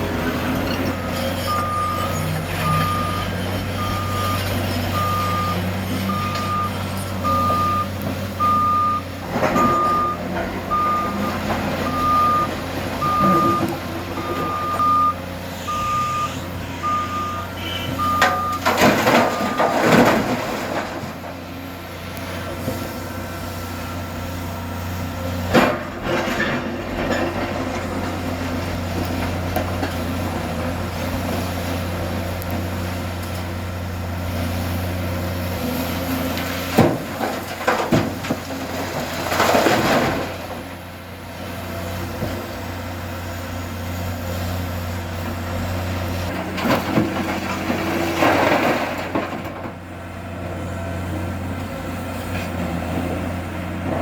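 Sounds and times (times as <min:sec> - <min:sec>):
excavator diesel engine running: 0:00.0 - 0:54.0
machine scraping and clanking: 0:09.2 - 0:15.8, 0:17.5 - 0:21.4, 0:25.4 - 0:31.7, 0:36.3 - 0:40.7, 0:46.2 - 0:49.8.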